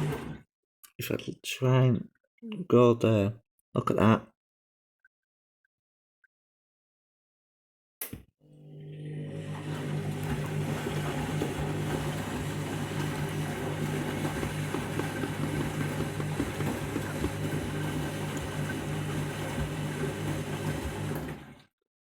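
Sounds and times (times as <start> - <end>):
washing machine running: 0.0 - 0.4, 8.6 - 21.7.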